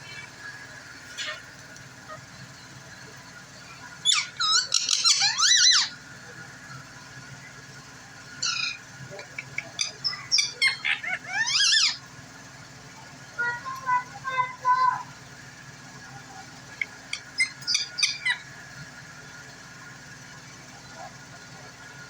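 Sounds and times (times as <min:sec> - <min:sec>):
parakeet squeaky chattering calls: 0:00.0 - 0:02.6, 0:03.8 - 0:06.0, 0:08.4 - 0:12.0, 0:16.7 - 0:18.6.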